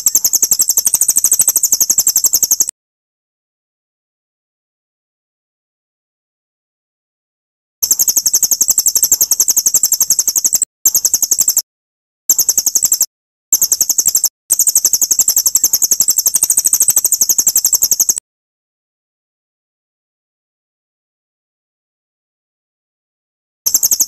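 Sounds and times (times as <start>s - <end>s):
songbird chattering trill: 0.0s - 2.7s, 13.6s - 18.2s.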